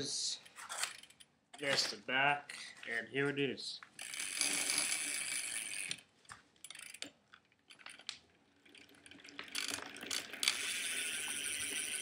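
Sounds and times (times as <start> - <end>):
bicycle freewheel hub ticking: 4.0 - 6.0, 8.6 - 12.0.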